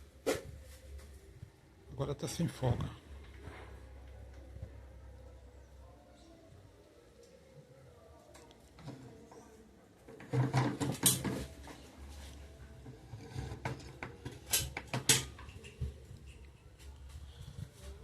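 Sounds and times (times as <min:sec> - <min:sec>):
faint low hum: 0:00.0 - 0:18.0.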